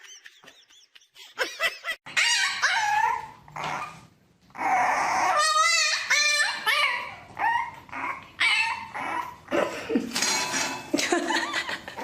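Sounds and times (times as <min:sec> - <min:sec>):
dog whining and barking: 0:02.1 - 0:09.5.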